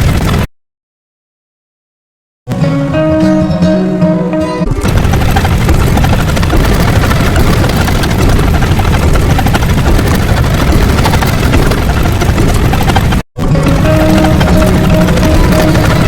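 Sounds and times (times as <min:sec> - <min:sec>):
pulsing mechanical rumble: 0:04.6 - 0:16.0.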